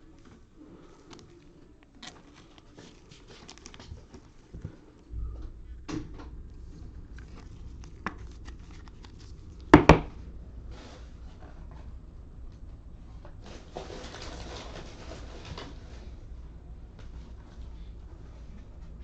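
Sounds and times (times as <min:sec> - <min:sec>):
low steady rumble: 0:00.0 - 0:19.0
trading cards sliding and rustling: 0:06.6 - 0:09.7.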